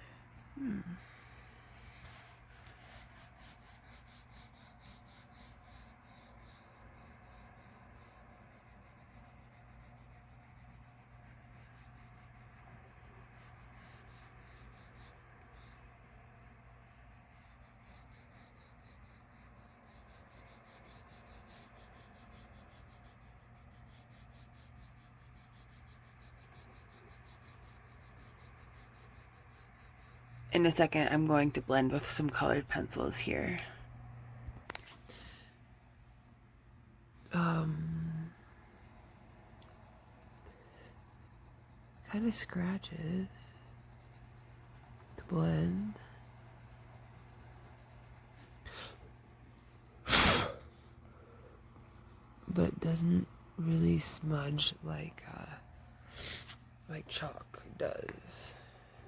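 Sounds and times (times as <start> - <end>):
steady low hum: 0.0 - 59.0
pencil scratching on paper: 1.0 - 33.7, 37.4 - 48.9, 50.6 - 55.4.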